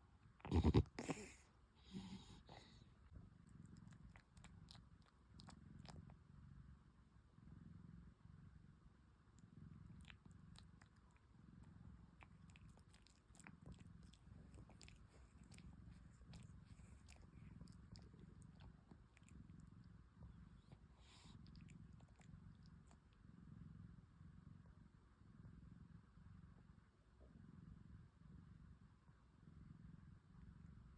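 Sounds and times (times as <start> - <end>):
cat snoring softly: 0.4 - 30.9
small mouth clicks: 12.2 - 15.6.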